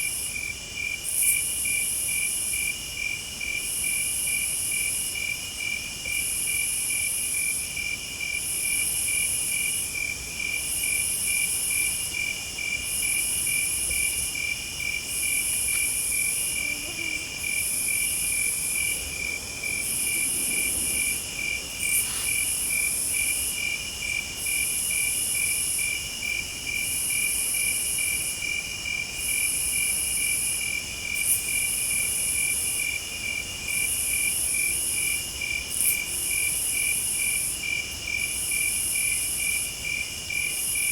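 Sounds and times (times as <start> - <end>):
crickets chirping: 0.0 - 40.9
high insect buzz: 12.6 - 23.6.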